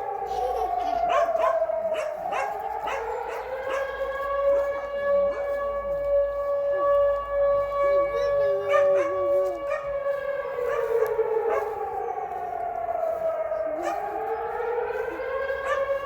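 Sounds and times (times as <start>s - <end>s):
air raid siren wailing: 0.0s - 16.0s
dog barking and yelping: 0.5s - 4.0s, 8.7s - 9.9s, 10.6s - 11.8s, 13.8s - 14.2s, 15.6s - 16.0s.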